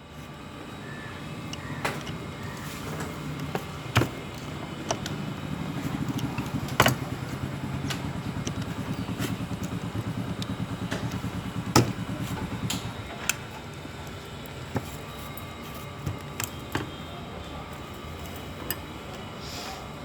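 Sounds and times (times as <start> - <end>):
low mechanical hum: 0.0 - 20.0.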